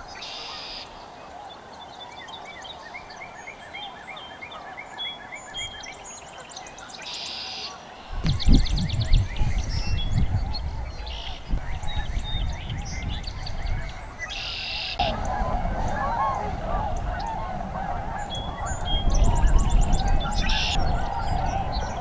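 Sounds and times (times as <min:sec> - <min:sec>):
small birds chirping and trilling: 0:08.2 - 0:22.0
distant swans calling: 0:09.2 - 0:22.0.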